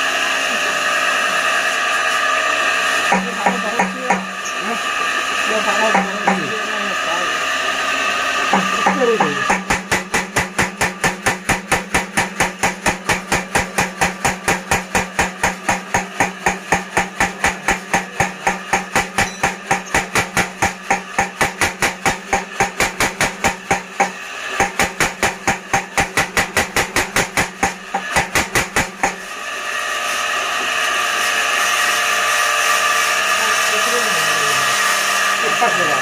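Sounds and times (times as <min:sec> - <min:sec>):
steady machine hum: 0:00.0 - 0:36.0
power hammer pounding: 0:02.6 - 0:29.9.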